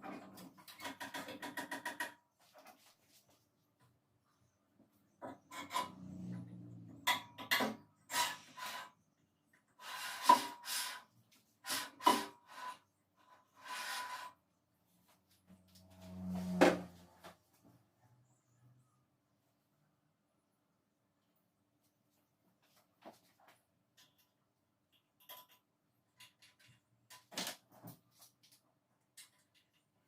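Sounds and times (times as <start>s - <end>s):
metal and wood scraping: 5.1s - 9.1s, 9.7s - 17.7s.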